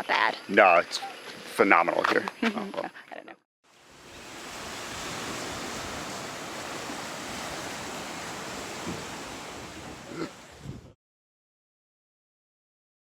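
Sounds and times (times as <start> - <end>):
sea waves on the shore: 3.7 - 11.0.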